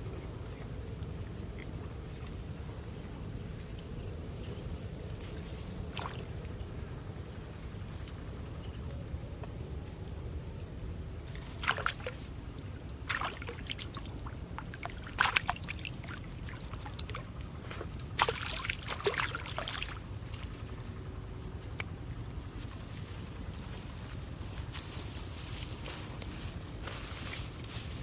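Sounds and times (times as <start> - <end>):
water splashing and sloshing: 4.5 - 6.7, 11.2 - 21.0.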